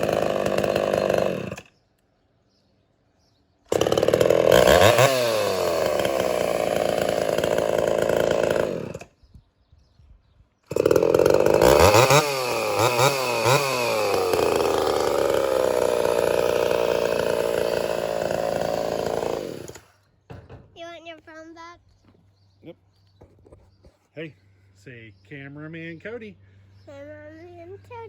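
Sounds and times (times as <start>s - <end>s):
chainsaw revving and idling: 0.0s - 1.7s, 3.7s - 9.2s, 10.7s - 20.0s.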